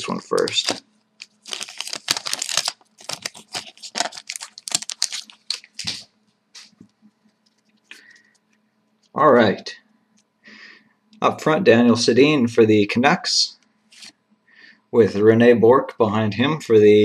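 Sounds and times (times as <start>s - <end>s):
wrapper tearing and crinkling: 0.0s - 6.1s.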